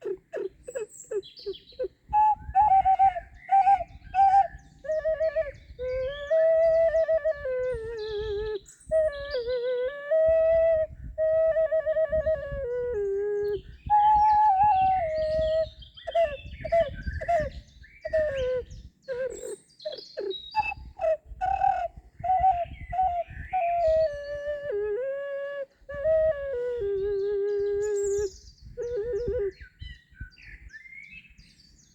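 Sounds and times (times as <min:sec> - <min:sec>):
birds chirping: 0:00.0 - 0:09.8, 0:12.7 - 0:24.9
ocarina melody: 0:00.0 - 0:29.7.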